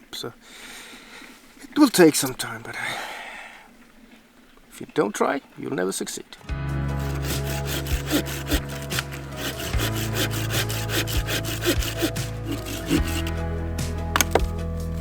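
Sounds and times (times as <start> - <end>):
background music: 6.5 - 15.0
saw cutting wood: 6.9 - 13.4, 14.1 - 14.5.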